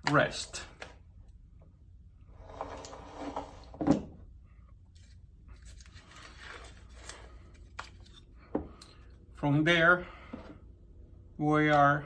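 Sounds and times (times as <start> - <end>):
parts rustling and scraping: 2.2 - 9.2.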